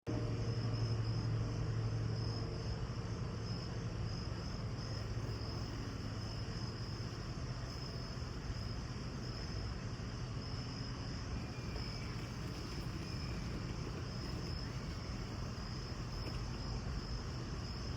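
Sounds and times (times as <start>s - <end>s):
insects chirping trill: 0.1s - 17.9s.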